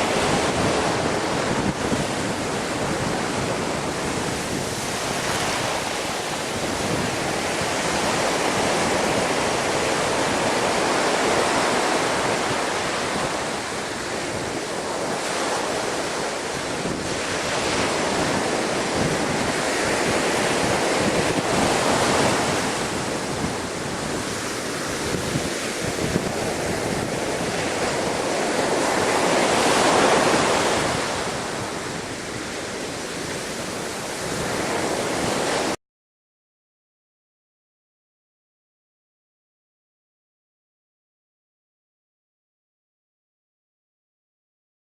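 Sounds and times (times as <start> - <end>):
wind on microphone: 0.0 - 35.8.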